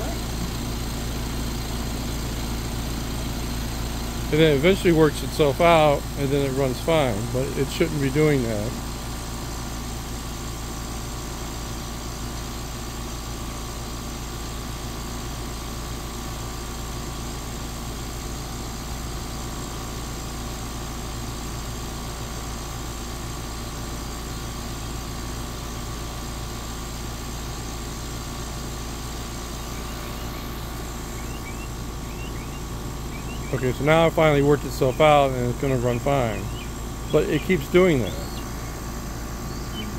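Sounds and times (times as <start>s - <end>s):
air conditioner humming: 0.0s - 11.3s, 27.6s - 39.9s.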